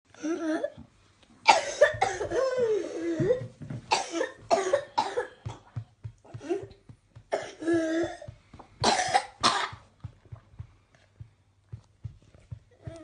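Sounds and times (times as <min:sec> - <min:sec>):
whooping cough: 0:08.8 - 0:09.8.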